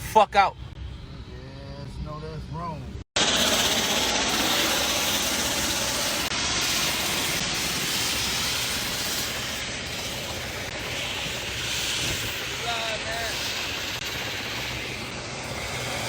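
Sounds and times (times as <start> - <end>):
helicopter turbine and rotor: 3.2 - 16.0.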